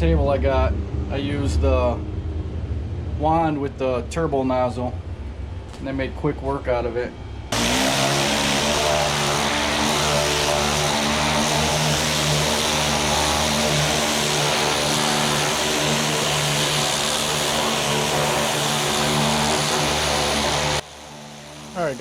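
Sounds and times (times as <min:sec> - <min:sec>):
high-pressure water jet hissing: 0:07.5 - 0:22.0
pressure washer motor hum: 0:07.5 - 0:22.0.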